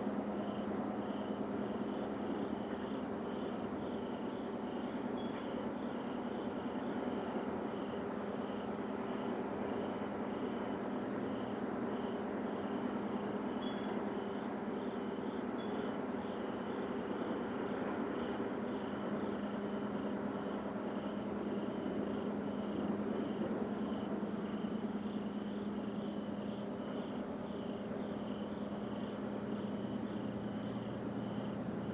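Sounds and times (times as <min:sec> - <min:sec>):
faint high chirp: 0:13.6 - 0:13.9.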